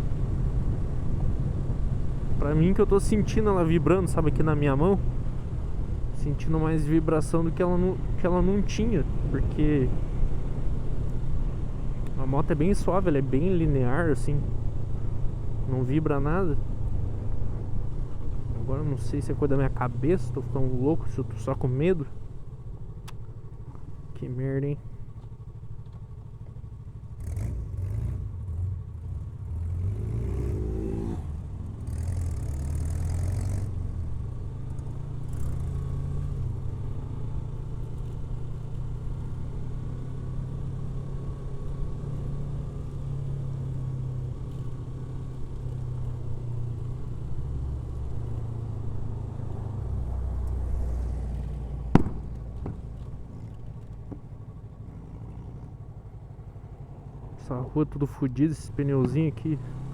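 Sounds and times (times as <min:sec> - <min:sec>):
motorcycle engine running: 0:00.0 - 0:59.9
sharp click: 0:23.0 - 0:23.3.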